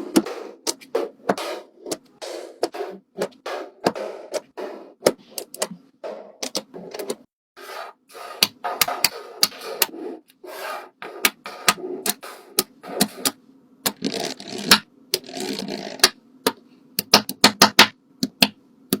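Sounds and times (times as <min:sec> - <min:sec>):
scraping and rubbing: 0:00.0 - 0:13.2.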